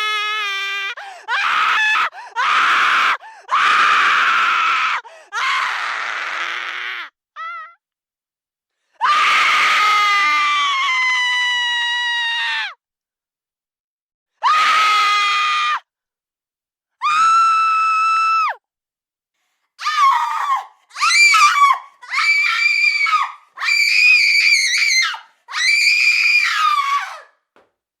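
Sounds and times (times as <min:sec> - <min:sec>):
woman screaming: 0:19.8 - 0:27.3.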